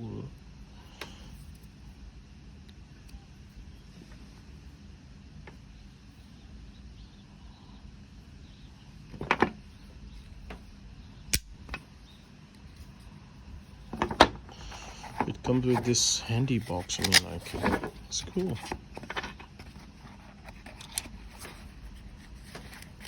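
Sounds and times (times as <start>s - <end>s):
low steady background hum: 0.0s - 23.0s
sharp single clicks: 11.3s - 11.6s.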